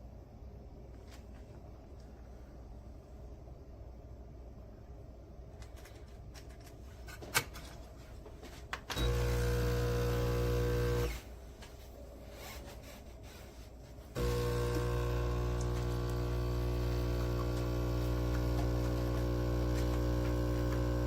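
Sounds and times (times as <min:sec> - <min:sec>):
espresso machine pump humming: 0:09.0 - 0:11.3, 0:14.2 - 0:21.0.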